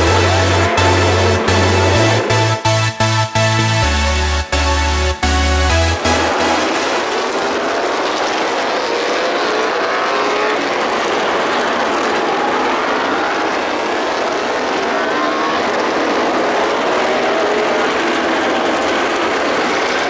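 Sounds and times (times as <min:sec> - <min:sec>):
racing motorcycles accelerating: 0:00.0 - 0:20.0.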